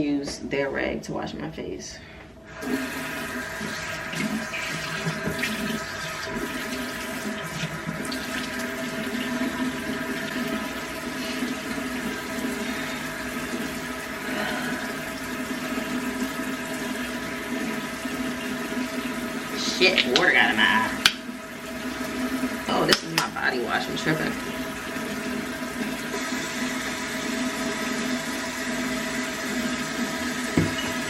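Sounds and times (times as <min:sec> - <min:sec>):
tap running into sink: 0:03.6 - 0:08.6, 0:19.8 - 0:21.3, 0:22.8 - 0:23.5, 0:29.8 - 0:31.0.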